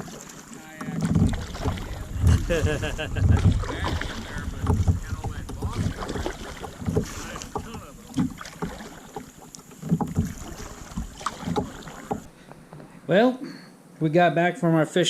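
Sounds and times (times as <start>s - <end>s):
knocks against kayak hull: 0.8s - 12.3s
wind buffeting microphone: 1.0s - 8.7s.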